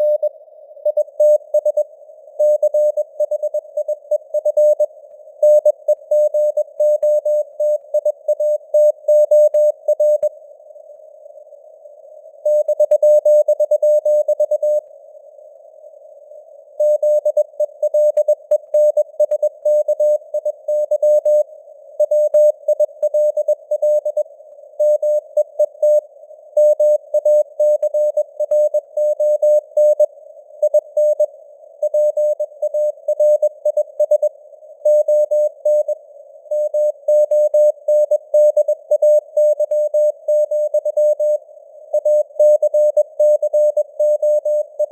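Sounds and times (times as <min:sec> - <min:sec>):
faint radio noise hiss: 0:09.7 - 0:12.7, 0:14.0 - 0:42.4
morse code beeps: 0:16.8 - 0:21.4.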